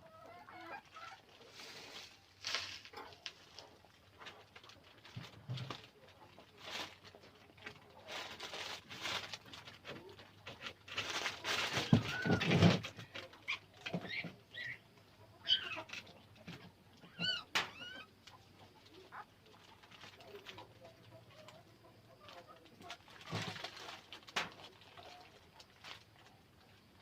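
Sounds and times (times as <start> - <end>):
rustling and shuffling: 0.7 - 27.0
puppies squeaking and whimpering: 11.8 - 12.7, 13.4 - 16.1, 17.0 - 18.2.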